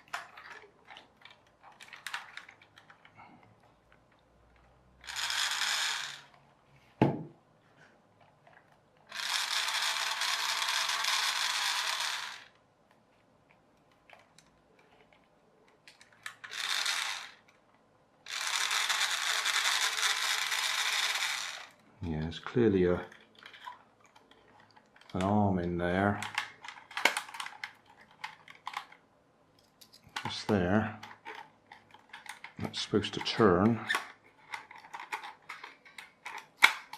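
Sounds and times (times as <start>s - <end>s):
toy car motor whirring: 5.0s - 6.4s, 9.1s - 12.6s, 16.2s - 17.4s, 18.3s - 21.8s, 31.1s - 35.6s.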